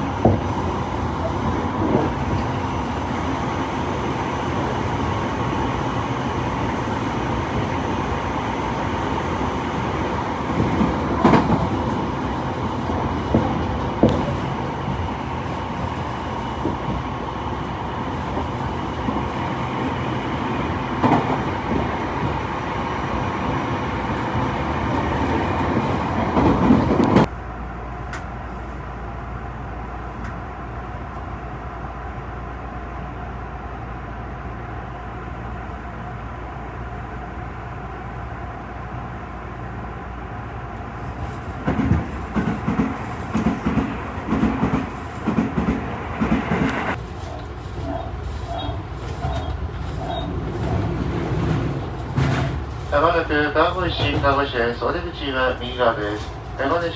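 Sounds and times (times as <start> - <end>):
wheels clacking over rail joints: 8.8 - 17.2, 41.1 - 53.2.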